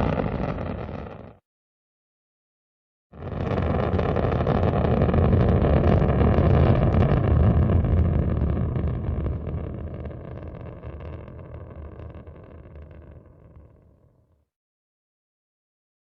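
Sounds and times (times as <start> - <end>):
rocket launch roar: 0.0 - 1.4, 3.2 - 13.6.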